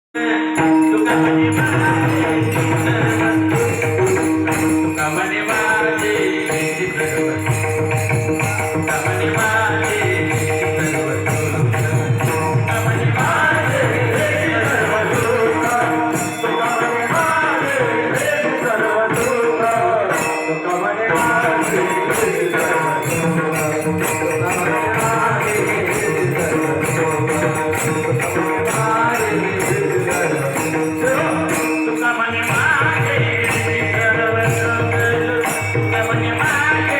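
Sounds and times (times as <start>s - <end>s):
man singing devotional melody: 0.0s - 36.9s
jingling hand cymbals: 0.2s - 36.9s
hand drum beat: 21.7s - 36.9s.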